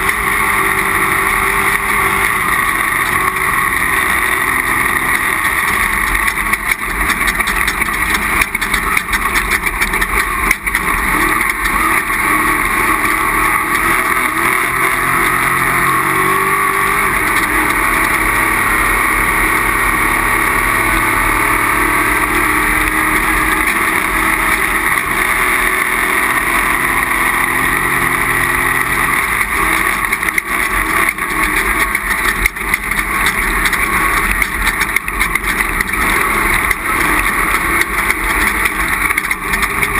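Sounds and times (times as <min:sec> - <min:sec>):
engine running hard: 0:00.0 - 0:39.9
wind and road noise: 0:00.0 - 0:39.9
knocks and rattles: 0:04.0 - 0:15.4, 0:28.8 - 0:39.9.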